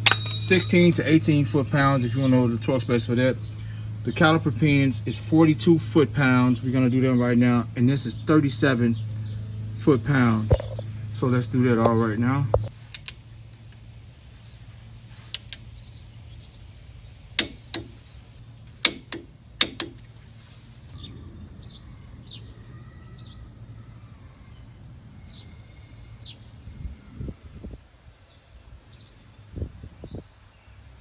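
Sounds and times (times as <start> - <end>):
torque wrench clicking: 0.0 - 0.8, 12.8 - 13.2, 15.3 - 15.7, 17.4 - 18.0, 18.8 - 20.0
birds chirping: 2.0 - 20.1.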